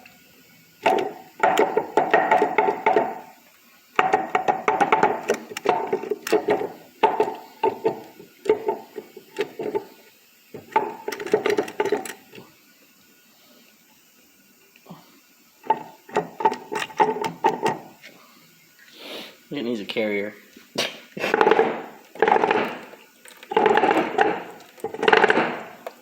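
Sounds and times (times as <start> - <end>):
bearing clunking and rattling: 0.8 - 3.3, 4.0 - 9.9, 10.6 - 12.4, 15.6 - 17.9, 21.3 - 26.0.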